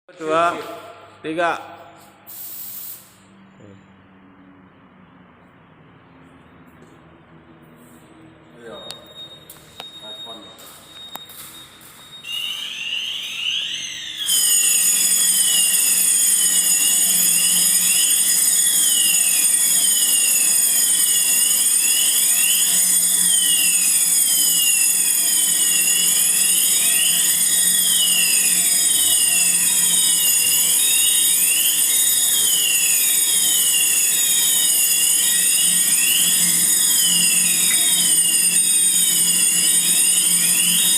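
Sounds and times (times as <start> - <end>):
fire alarm siren sweeps: 7.8 - 40.9.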